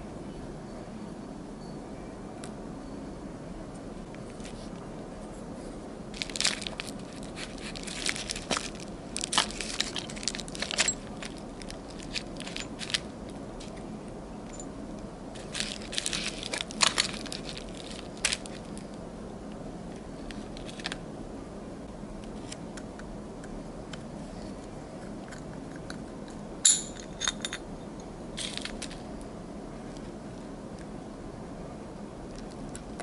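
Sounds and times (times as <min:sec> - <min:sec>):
steady background hum: 0:00.0 - 0:33.0
metal parts and tools clinking: 0:07.8 - 0:13.1, 0:26.6 - 0:27.6.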